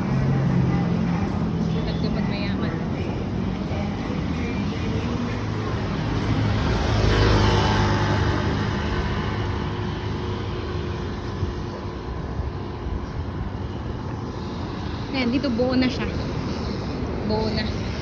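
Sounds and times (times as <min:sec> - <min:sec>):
vehicle passing by: 0:00.0 - 0:18.0.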